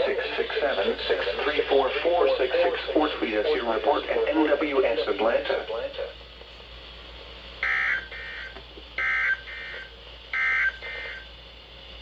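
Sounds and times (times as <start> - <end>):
shrill two-tone data buzzes: 7.6 - 11.4.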